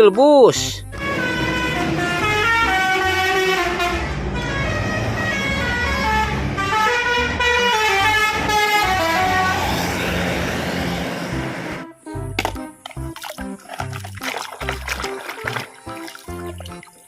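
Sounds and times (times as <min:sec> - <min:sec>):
bus horn playing a tune: 0:00.9 - 0:12.0.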